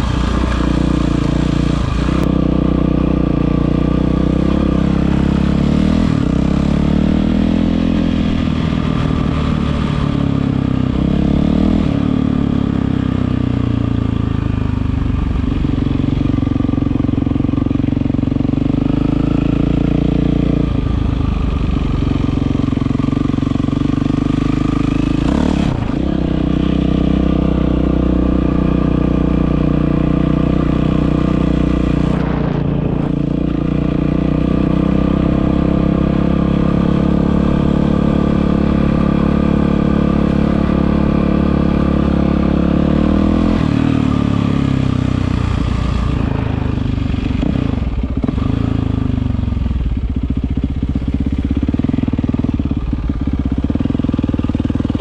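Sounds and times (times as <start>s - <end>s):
motorcycle engine running loud: 0.0s - 55.0s.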